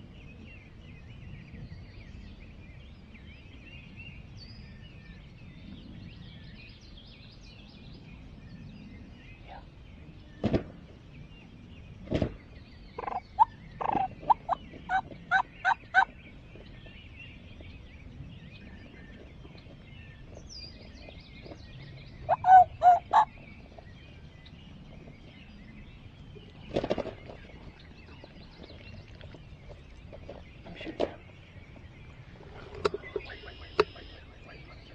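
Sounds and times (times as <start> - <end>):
small birds chirping: 0.0 - 34.9
wild turkey gobbling: 13.0 - 16.2, 22.3 - 23.8.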